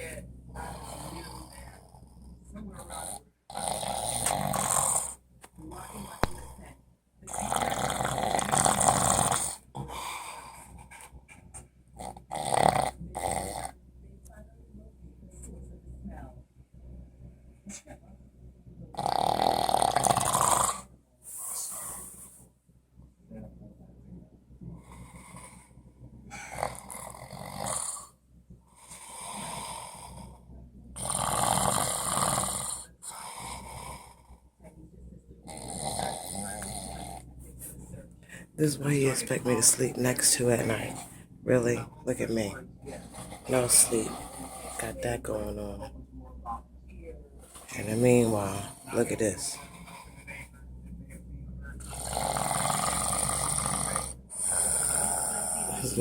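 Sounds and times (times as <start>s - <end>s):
man snoring loudly: 0.6s - 1.6s, 3.0s - 5.2s, 7.3s - 10.7s, 12.0s - 13.8s, 19.0s - 20.9s, 26.3s - 28.1s, 28.8s - 30.4s, 31.0s - 34.4s, 35.5s - 37.2s, 39.0s - 45.9s, 47.6s - 50.2s, 51.8s - 56.0s
soft breathing: 21.2s - 22.5s, 36.1s - 45.1s, 47.4s - 52.0s.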